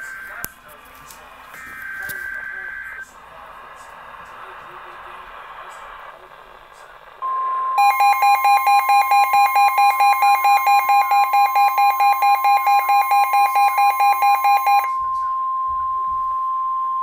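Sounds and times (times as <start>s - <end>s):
steady warning alarm tone: 0.0s - 0.7s, 1.4s - 3.4s, 7.2s - 16.9s
electronic alarm beeping: 1.6s - 3.0s, 7.2s - 17.0s.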